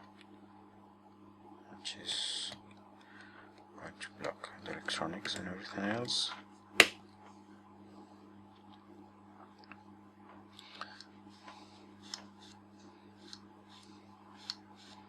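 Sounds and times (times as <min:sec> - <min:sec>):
low steady hum: 0:00.0 - 0:15.0
small clicks and light scrapes: 0:13.2 - 0:15.0.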